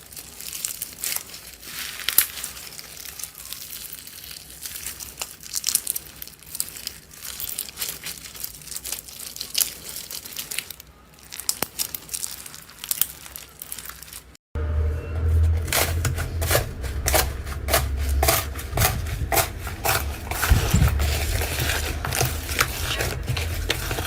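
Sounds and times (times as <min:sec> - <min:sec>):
slime crackling and popping: 0:00.0 - 0:14.4.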